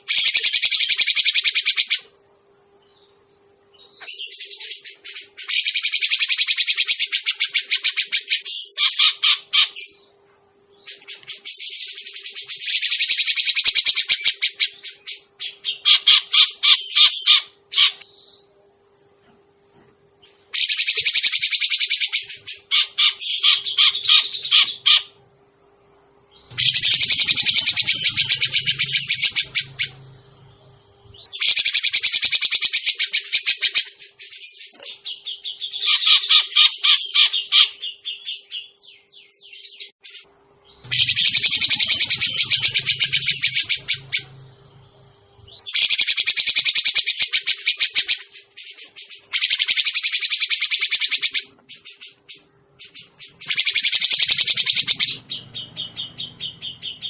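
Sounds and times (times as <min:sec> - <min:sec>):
bird high chattering calls: 0:00.0 - 0:02.1, 0:03.9 - 0:10.1, 0:10.8 - 0:18.5, 0:20.6 - 0:25.2, 0:26.4 - 0:38.8, 0:39.6 - 0:57.0
low hum: 0:25.1 - 0:31.4, 0:40.6 - 0:45.7.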